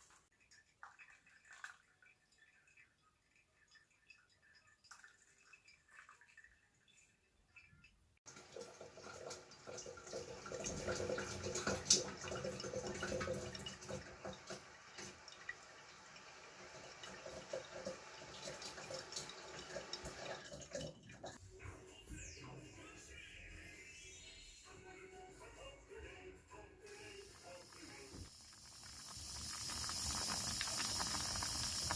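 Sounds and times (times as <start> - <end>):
tap water running into sink: 8.3 - 21.4, 26.9 - 31.9.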